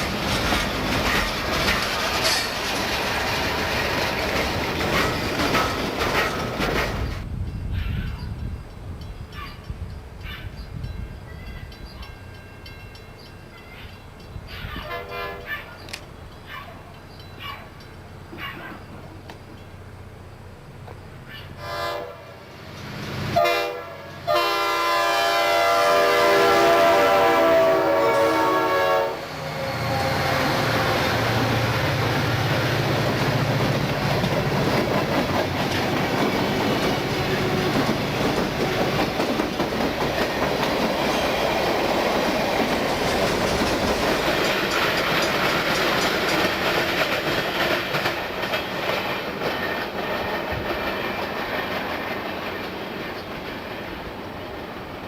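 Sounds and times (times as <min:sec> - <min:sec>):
locomotive engine rumble: 0:00.0 - 0:07.7, 0:15.7 - 0:23.4, 0:25.4 - 0:54.8
train wheels clacking on rails: 0:00.0 - 0:14.4, 0:28.8 - 0:54.7
locomotive air horn blasts: 0:14.8 - 0:15.5, 0:21.6 - 0:22.4, 0:23.3 - 0:31.8.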